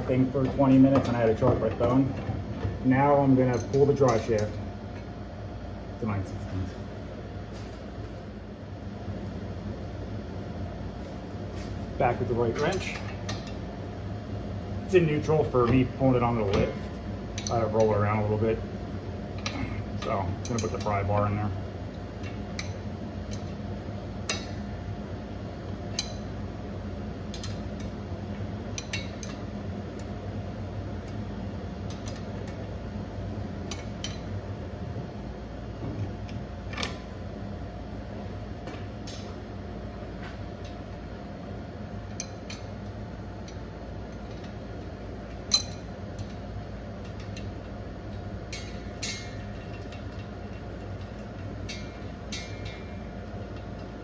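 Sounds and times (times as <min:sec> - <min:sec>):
steady low hum: 0:00.0 - 0:54.0
pry bar clinking on metal: 0:45.5 - 0:46.3, 0:48.5 - 0:53.0.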